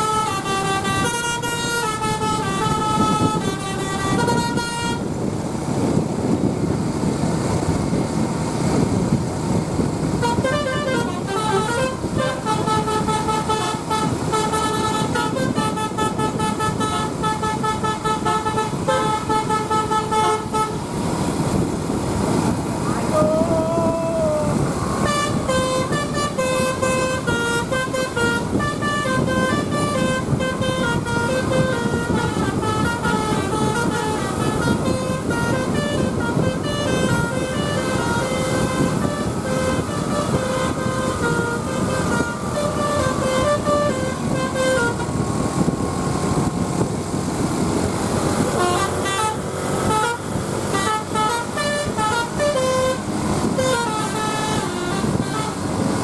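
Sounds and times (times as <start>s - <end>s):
bus horn playing melody: 0.0s - 6.4s, 9.7s - 56.0s
engine and road rumble: 0.0s - 56.0s.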